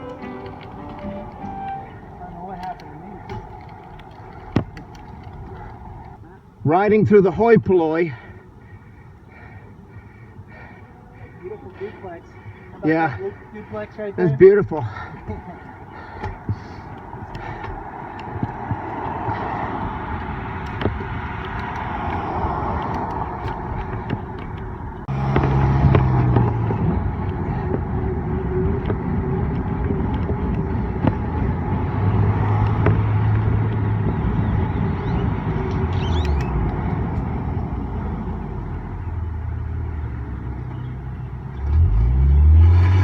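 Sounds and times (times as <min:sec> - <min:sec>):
low vehicle engine hum: 0:00.0 - 0:06.7, 0:08.2 - 0:43.0
road noise rushing: 0:00.0 - 0:43.0.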